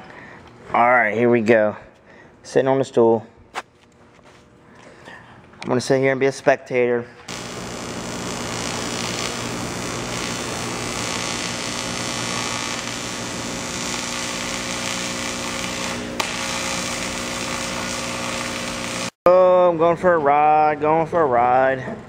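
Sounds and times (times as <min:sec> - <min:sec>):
power tool whining: 0:07.3 - 0:19.2.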